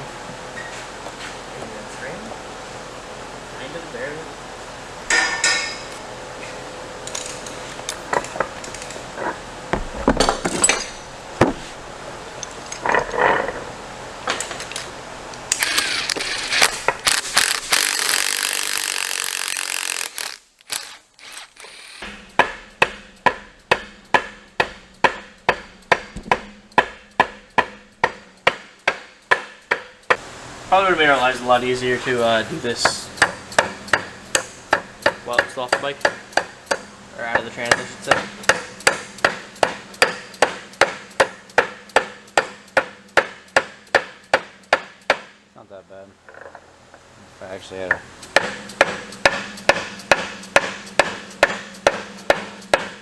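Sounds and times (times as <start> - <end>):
hammer strikes on metal: 5.1 - 6.0, 22.0 - 30.2, 32.8 - 45.4, 47.9 - 53.0
hand tools clinking on metal: 5.1 - 13.6, 32.0 - 40.4
loud hiss: 30.2 - 38.7.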